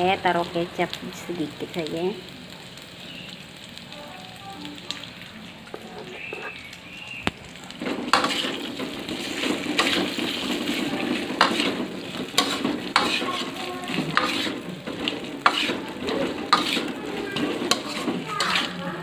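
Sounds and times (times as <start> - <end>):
food sizzling: 0.0 - 19.0
utensil scraping in a pan: 7.8 - 19.0.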